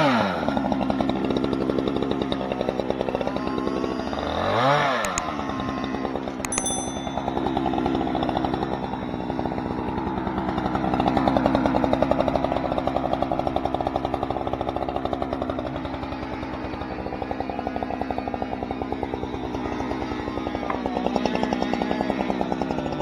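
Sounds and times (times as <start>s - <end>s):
engine running steadily: 0.0s - 23.0s
sharp metallic clinks: 6.4s - 7.7s.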